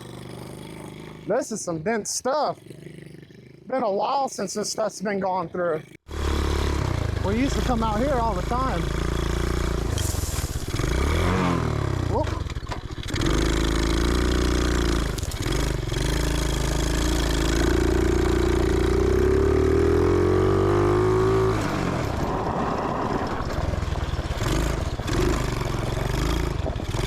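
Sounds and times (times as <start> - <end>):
small engine revving: 5.9 - 27.0.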